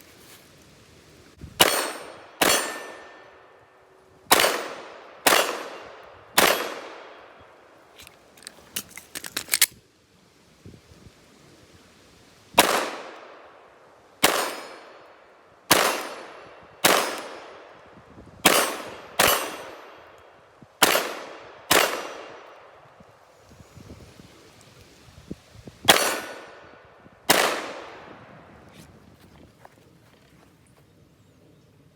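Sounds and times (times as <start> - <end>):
pistol shots with echo: 1.6 - 3.3, 4.3 - 7.2, 12.6 - 13.2, 14.2 - 15.0, 15.7 - 17.7, 18.4 - 20.0, 20.8 - 22.5, 25.9 - 26.6, 27.3 - 28.1.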